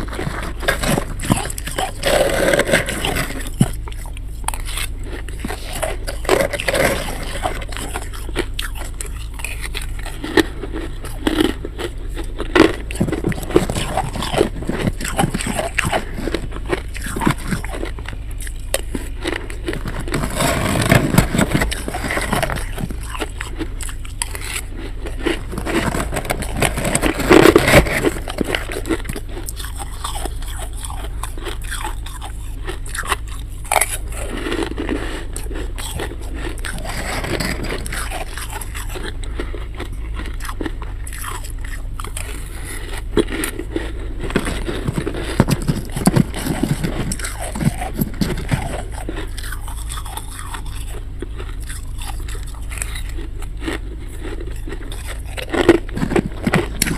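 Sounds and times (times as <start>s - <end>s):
frost being scraped: 0.0s - 11.5s, 19.4s - 30.8s, 33.8s - 38.8s
icy crunching between teeth: 0.0s - 56.9s.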